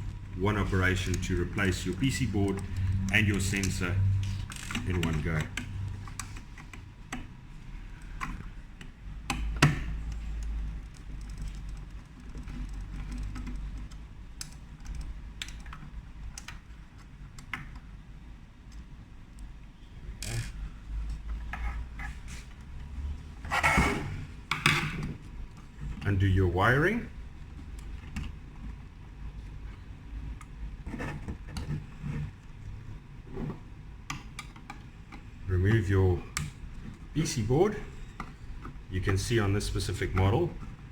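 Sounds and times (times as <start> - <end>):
small clicks and handling noises: 0.0 - 18.0, 18.6 - 19.6, 27.4 - 32.8, 33.4 - 37.1
low steady hum: 0.0 - 40.9.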